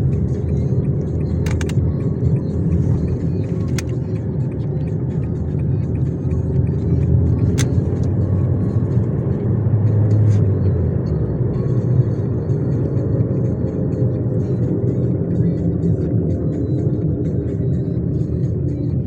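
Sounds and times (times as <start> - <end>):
road and engine noise: 0.0 - 19.0
sharp click: 1.4 - 1.8, 7.5 - 7.9.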